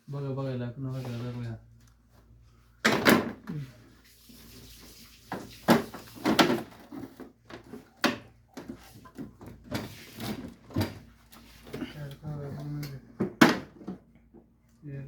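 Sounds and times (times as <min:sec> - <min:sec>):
plastic parts knocking and clattering: 0:02.8 - 0:03.5, 0:05.3 - 0:11.1, 0:13.2 - 0:14.5.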